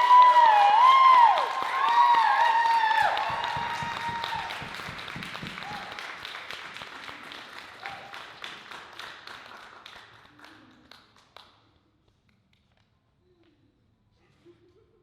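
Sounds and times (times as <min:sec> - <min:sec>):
audience applause: 0:00.0 - 0:11.0.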